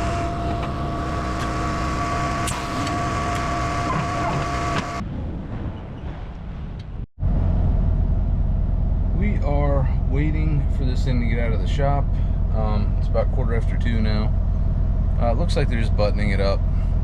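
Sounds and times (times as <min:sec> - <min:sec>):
high whine of equipment: 0:00.0 - 0:05.0
truck engine running: 0:00.0 - 0:05.0, 0:07.2 - 0:17.0.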